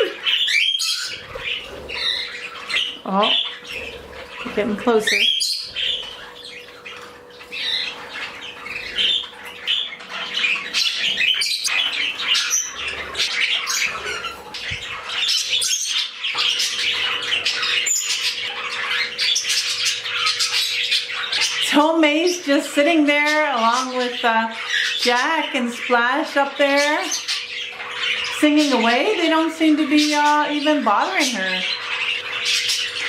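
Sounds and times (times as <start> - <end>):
budgerigar squawks: 0.0 - 21.7
budgerigars chattering and warbling: 0.0 - 33.0.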